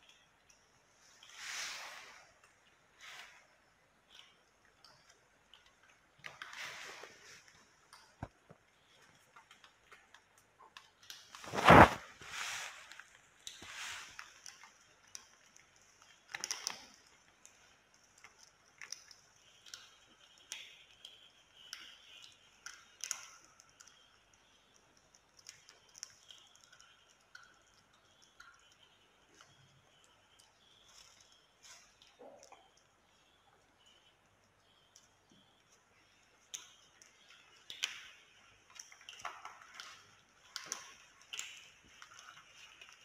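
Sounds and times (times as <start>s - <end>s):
soft rustles: 0.9s - 4.4s, 5.8s - 19.1s
light clicks and taps: 12.9s - 43.0s.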